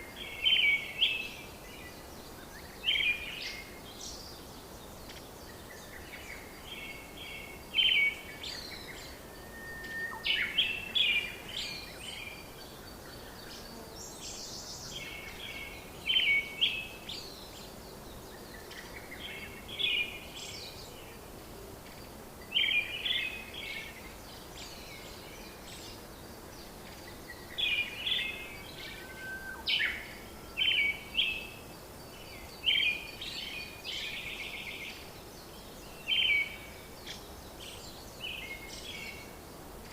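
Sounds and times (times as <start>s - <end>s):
steady low hiss: 0.0s - 39.9s.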